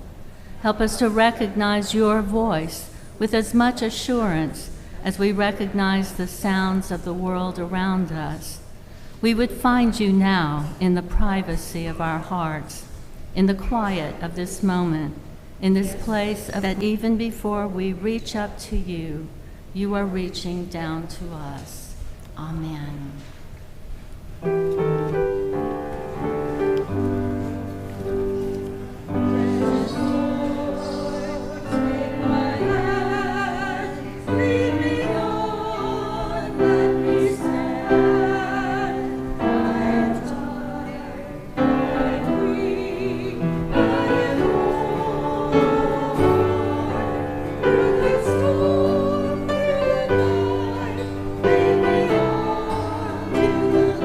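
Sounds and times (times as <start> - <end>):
keyboard accompaniment: 24.4 - 54.0
choir singing with vibrato: 28.8 - 54.0.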